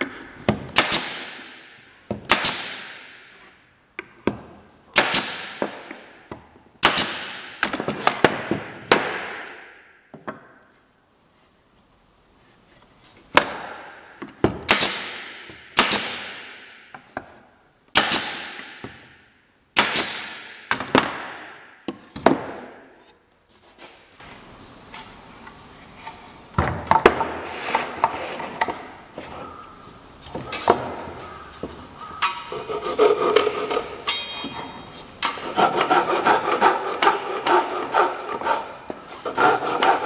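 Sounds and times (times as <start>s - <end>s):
wood scraping and handling: 22.0s - 40.0s.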